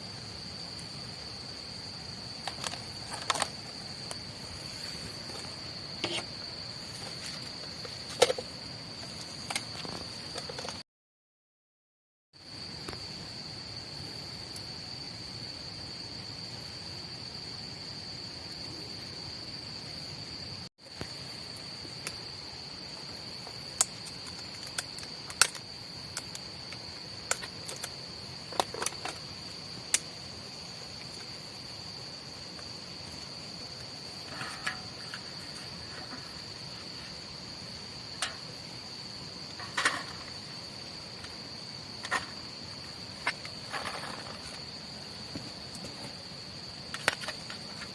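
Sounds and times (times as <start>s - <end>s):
insect trilling: 0.0s - 10.7s, 21.0s - 47.9s
sharp clicks and pops: 23.8s - 29.2s.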